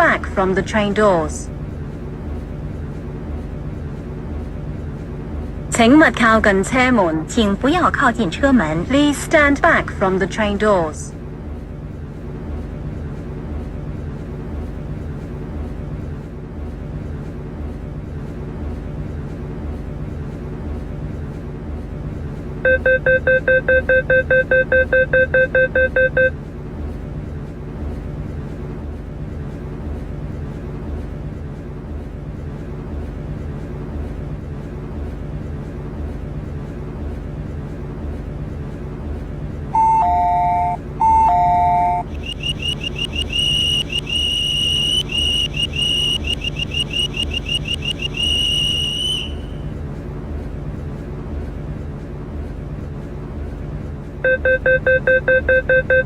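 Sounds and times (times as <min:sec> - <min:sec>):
train hum: 0:00.0 - 0:56.0
rapid electronic beeps: 0:22.7 - 0:26.4, 0:39.8 - 0:49.6, 0:54.3 - 0:56.0.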